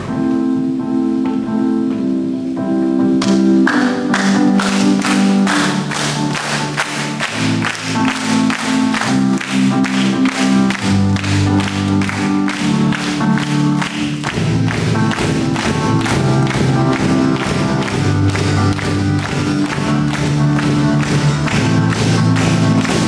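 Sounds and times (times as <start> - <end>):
sustained keyboard chords: 0.0 - 23.0
worship band playing: 3.2 - 23.0
steady drum beat: 14.0 - 23.0.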